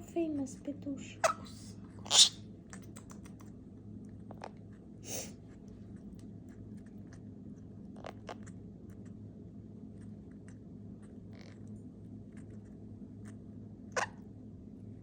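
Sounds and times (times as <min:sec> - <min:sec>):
bird beak crunching pasta: 0:02.2 - 0:03.6.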